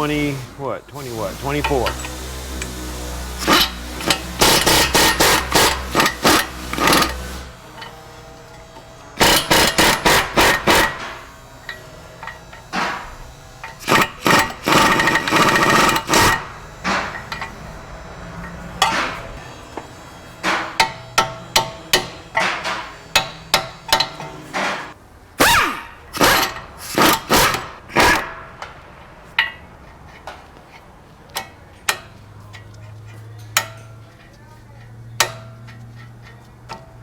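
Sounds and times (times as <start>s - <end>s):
hammer striking metal bolts: 1.6s - 17.6s, 18.4s - 28.8s, 35.2s - 35.6s.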